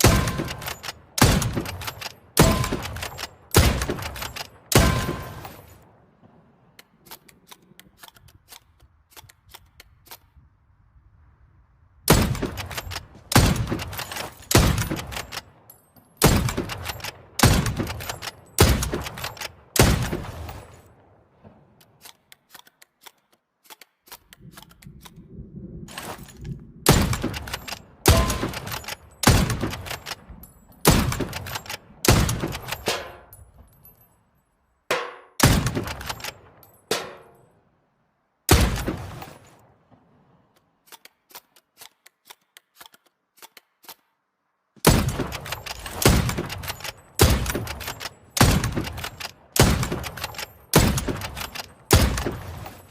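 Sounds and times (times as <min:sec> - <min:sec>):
rifle shots echoing: 0:00.0 - 0:07.2, 0:12.1 - 0:22.0, 0:26.9 - 0:33.4, 0:34.9 - 0:37.5, 0:38.5 - 0:40.0, 0:44.8 - 0:52.9.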